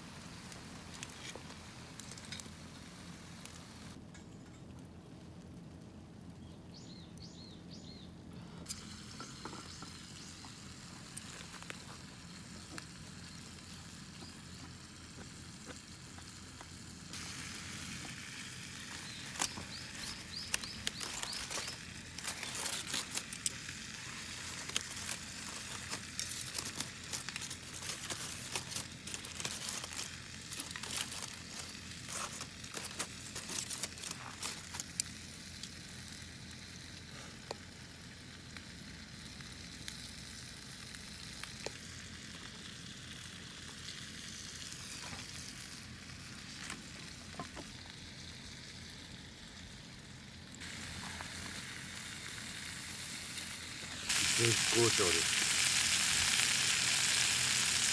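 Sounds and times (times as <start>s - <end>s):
bamboo shoots sizzling: 0.0s - 4.0s, 8.6s - 57.9s
wood fire crackling: 0.0s - 57.9s.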